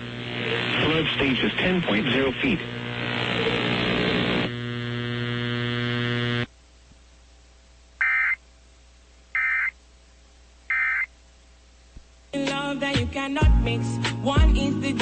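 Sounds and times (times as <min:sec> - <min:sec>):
steady buzzing tone: 0:00.0 - 0:09.9.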